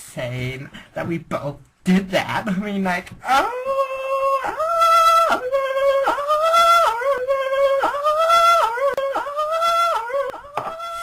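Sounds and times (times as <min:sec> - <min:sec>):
women squealing: 0:03.3 - 0:11.0.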